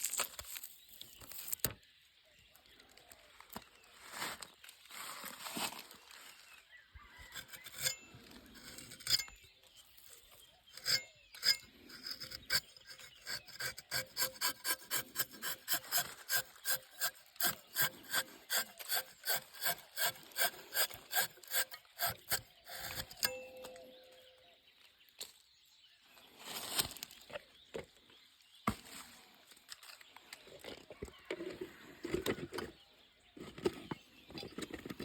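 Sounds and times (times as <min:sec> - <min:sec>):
file scraping strokes: 0:07.3 - 0:09.3, 0:10.7 - 0:23.3.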